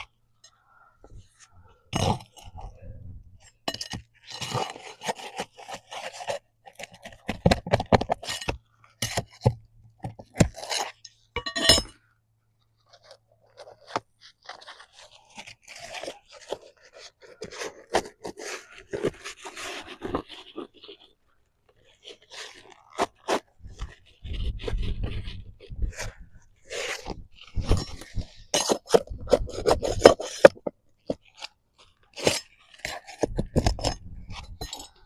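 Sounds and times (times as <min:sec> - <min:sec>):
hand tool scraping shingles: 0:03.5 - 0:09.6, 0:21.8 - 0:31.4, 0:32.0 - 0:35.0.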